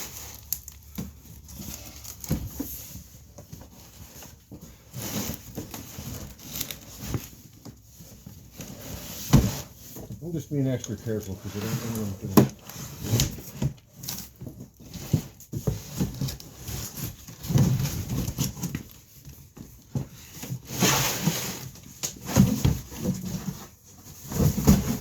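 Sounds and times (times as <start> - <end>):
cardboard being handled: 0.0 - 25.0
knocks and scrapes: 0.0 - 25.0.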